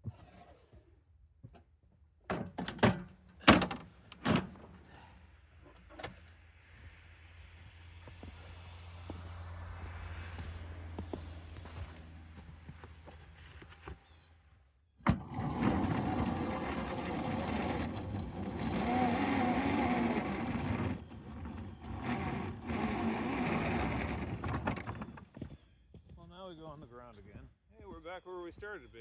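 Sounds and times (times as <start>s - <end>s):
vehicle motor whining: 2.3s - 5.2s, 15.0s - 25.6s
motor starting click: 15.0s - 25.1s.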